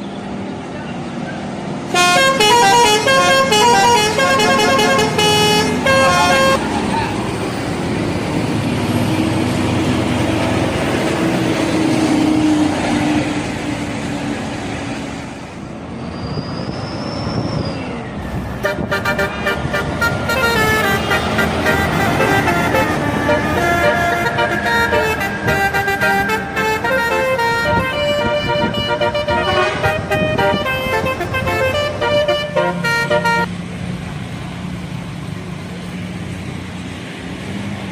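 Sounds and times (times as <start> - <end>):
road and bus engine noise: 0.0 - 37.9
bus musical air horn tune: 1.9 - 6.7, 18.6 - 33.5.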